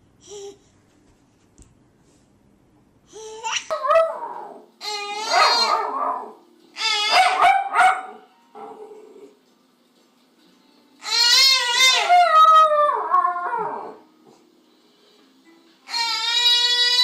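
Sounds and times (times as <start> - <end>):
dog whining and howling: 3.7 - 7.8, 11.0 - 14.0, 15.9 - 17.0.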